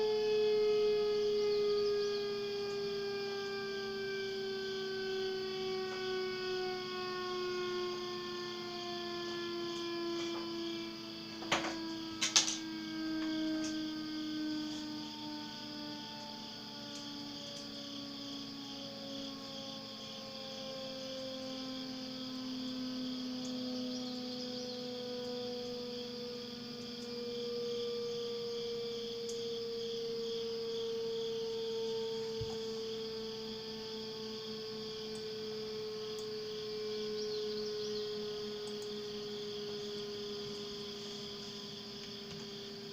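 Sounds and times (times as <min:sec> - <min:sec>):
siren winding down: 0:00.0 - 0:42.9
sharp clicks: 0:11.4 - 0:12.6.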